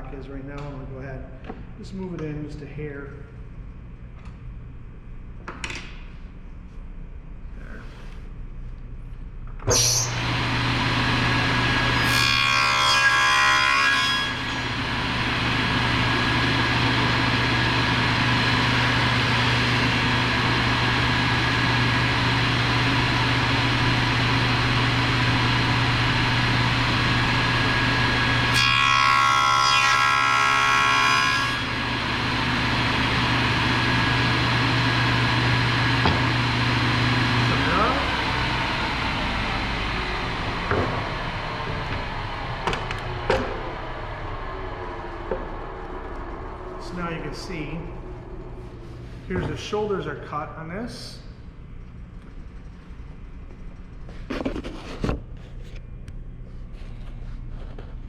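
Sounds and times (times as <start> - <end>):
saw cutting through wood: 9.7 - 42.1
table saw humming: 9.7 - 50.4.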